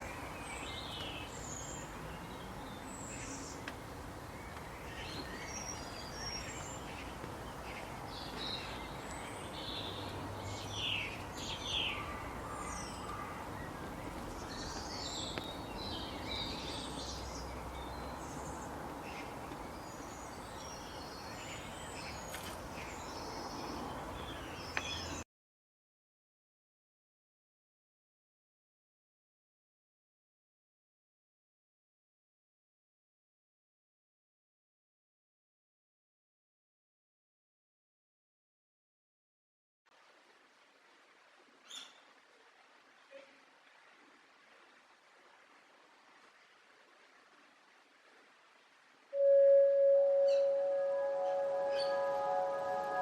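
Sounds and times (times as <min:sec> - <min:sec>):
steady background hiss: 0:40.0 - 0:53.0
birds chirping: 0:49.2 - 0:53.0.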